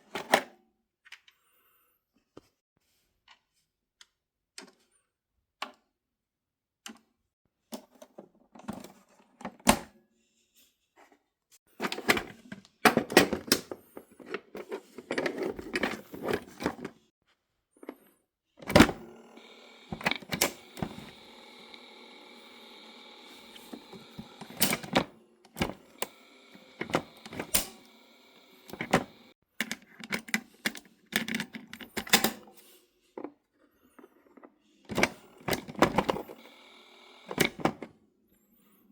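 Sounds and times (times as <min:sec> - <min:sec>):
cassette recorder clicks and knocks: 0:18.7 - 0:29.3.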